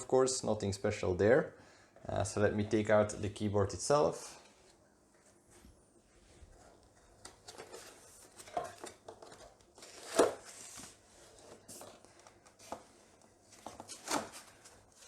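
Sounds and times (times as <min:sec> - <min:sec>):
packaging rustling and crinkling: 0:06.5 - 0:15.0.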